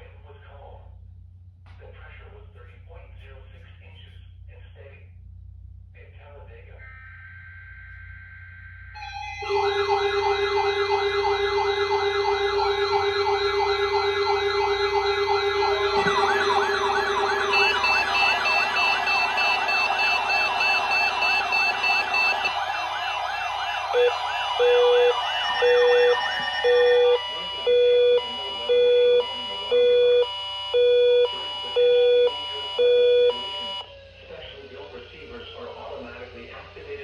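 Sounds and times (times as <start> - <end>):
warbling siren tones: 6.8 - 37.0
low beeping tone: 9.0 - 30.2.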